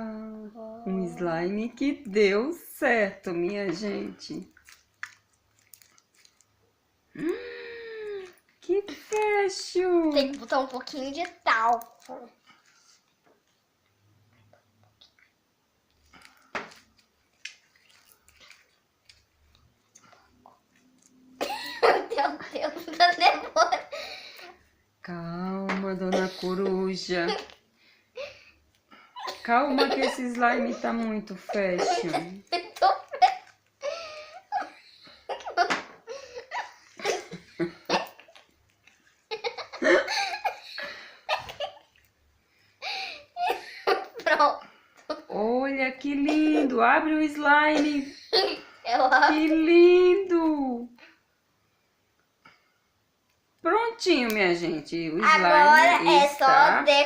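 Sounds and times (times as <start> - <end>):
children laughing and giggling: 21.4 - 24.6, 29.2 - 38.3, 39.3 - 41.9, 42.8 - 45.3, 47.9 - 49.6.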